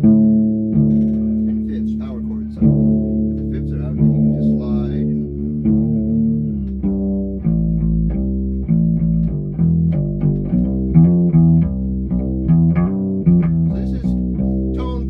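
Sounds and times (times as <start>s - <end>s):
fretless bass guitar plucked notes: 0.0s - 15.0s.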